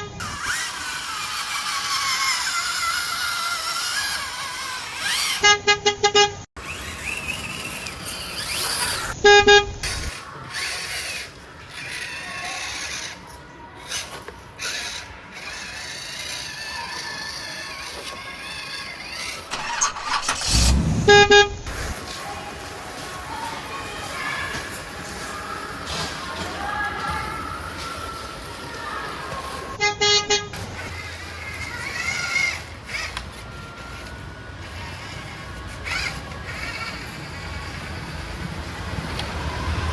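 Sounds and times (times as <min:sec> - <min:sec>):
steady whirring: 0:00.0 - 0:05.7, 0:06.6 - 0:29.8, 0:30.5 - 0:39.9
car horn honks: 0:05.0 - 0:06.4, 0:09.2 - 0:10.0, 0:19.5 - 0:21.9, 0:29.8 - 0:30.7.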